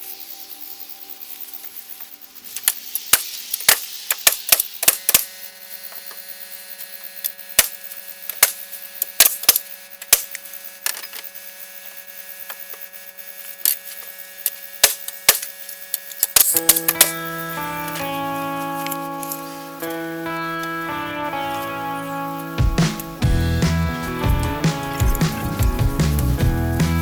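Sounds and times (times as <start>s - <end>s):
steady low hum: 16.4s - 27.0s.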